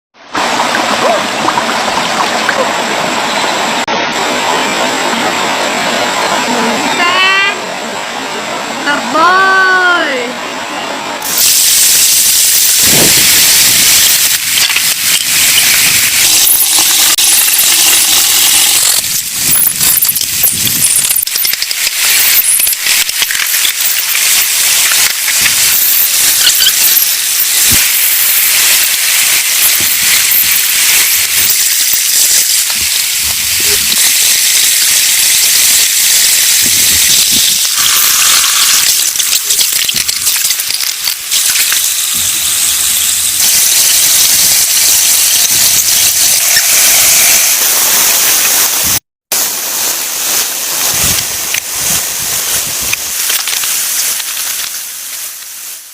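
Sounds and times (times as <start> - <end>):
heavy rain falling: 12.7 - 45.8, 47.6 - 55.9.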